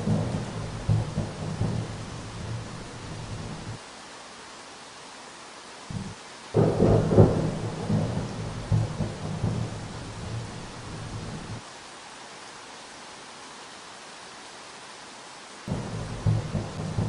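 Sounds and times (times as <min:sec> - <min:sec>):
thunder rumbling: 0:00.0 - 0:03.8, 0:05.9 - 0:11.6, 0:15.7 - 0:17.0
steady rain: 0:00.0 - 0:17.0.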